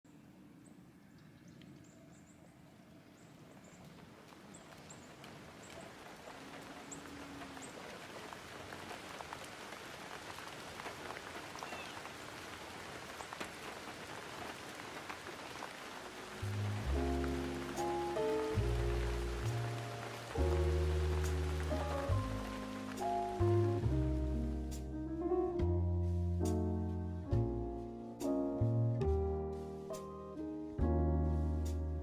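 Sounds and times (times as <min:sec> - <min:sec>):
raindrops striking nearby: 0:03.0 - 0:24.9
rain falling: 0:03.1 - 0:25.0.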